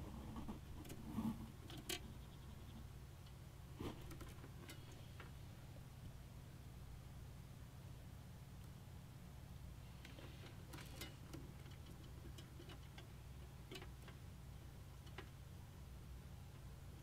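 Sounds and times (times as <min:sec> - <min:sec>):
low steady hum: 0:00.0 - 0:17.0
small clicks of computer parts: 0:10.0 - 0:14.2.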